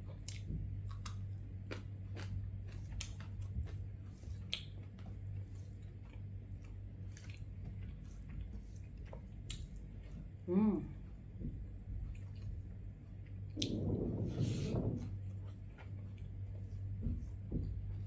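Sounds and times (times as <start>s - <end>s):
steady low hum: 0.0s - 18.0s
chewing with wet mouth clicks: 0.1s - 10.4s.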